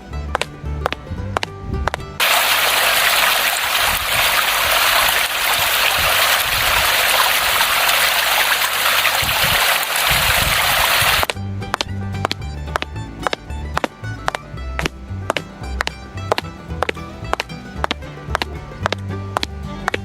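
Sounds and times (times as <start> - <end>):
steady rushing noise: 2.2 - 11.3.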